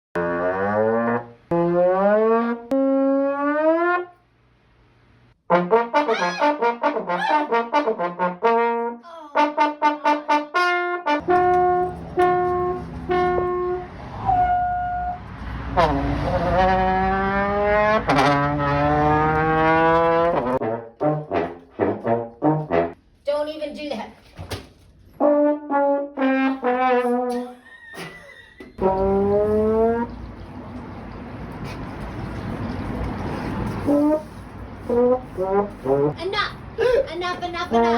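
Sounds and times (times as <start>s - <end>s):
trombone-like brass notes: 0.2s - 4.2s, 5.5s - 23.0s, 25.2s - 27.5s, 28.8s - 30.1s, 33.8s - 36.2s.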